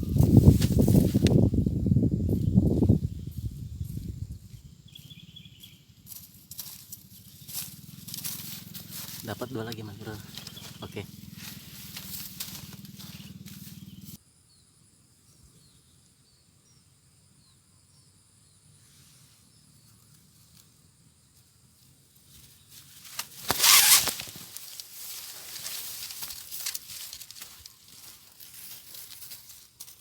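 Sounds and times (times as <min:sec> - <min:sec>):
scuffling near microphone: 0:00.0 - 0:01.6
small bird chirping: 0:00.0 - 0:14.6.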